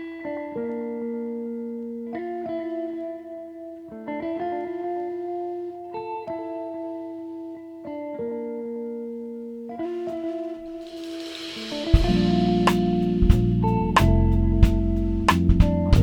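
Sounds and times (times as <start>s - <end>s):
slow plucked string music: 0.0s - 16.0s.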